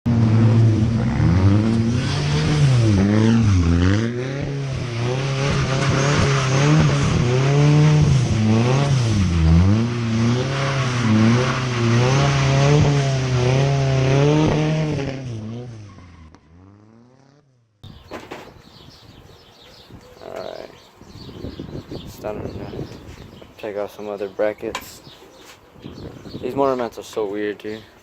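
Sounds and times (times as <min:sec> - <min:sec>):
car engine revving: 0:00.1 - 0:17.8.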